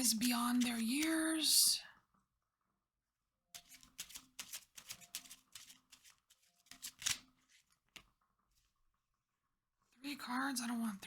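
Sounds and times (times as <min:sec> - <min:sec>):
deck of cards shuffled by hand: 0:00.0 - 0:01.3, 0:03.6 - 0:07.6.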